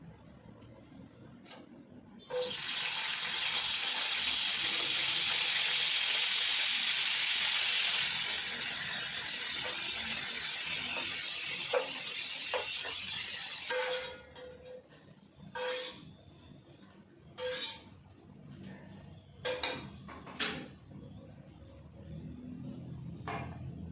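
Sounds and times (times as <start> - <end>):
food sizzling in oil: 2.3 - 14.2, 15.6 - 16.0, 17.4 - 17.8.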